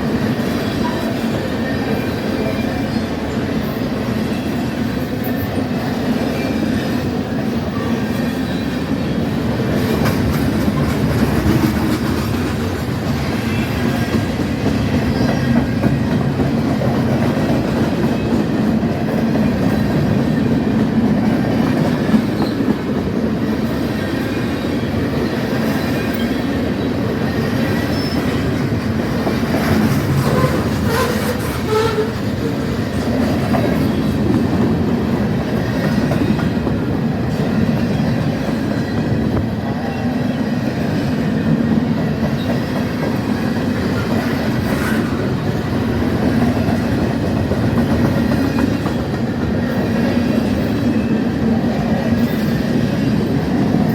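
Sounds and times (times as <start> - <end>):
train wheels clacking over rail joints: 9.7 - 24.1, 25.1 - 39.5.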